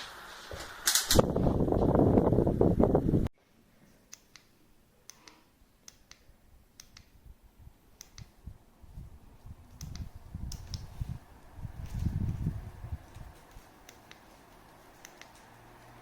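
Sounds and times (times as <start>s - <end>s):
light sharp clicks in pairs: 4.1s - 7.2s, 8.0s - 8.3s, 9.8s - 10.9s, 13.8s - 14.3s, 15.0s - 15.5s.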